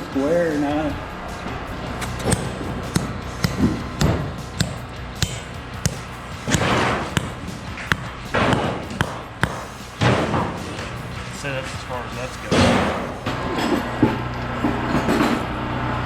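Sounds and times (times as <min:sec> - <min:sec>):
sharp knocks on wooden frame: 0:02.2 - 0:11.1.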